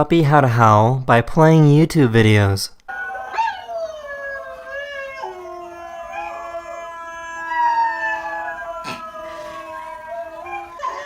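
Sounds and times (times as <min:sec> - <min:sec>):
puppy howling: 0:02.9 - 0:11.0
recorded dog howls: 0:02.9 - 0:11.0.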